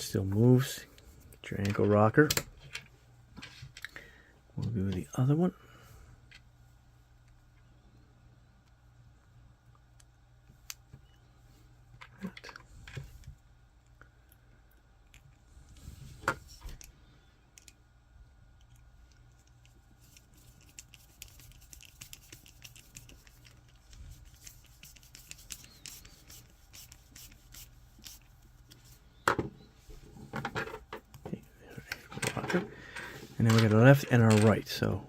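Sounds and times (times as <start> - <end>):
plastic parts clicking and scraping: 30.2 - 34.8.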